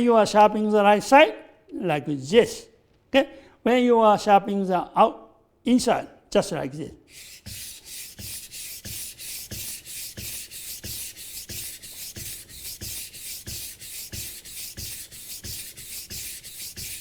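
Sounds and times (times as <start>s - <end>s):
knife rasping on whetstone: 7.1s - 17.0s.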